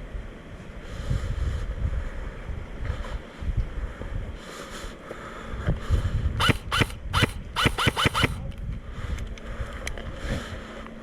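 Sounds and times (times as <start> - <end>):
wind rumble on microphone: 0.0 - 11.0
airsoft gun shots: 6.4 - 8.4.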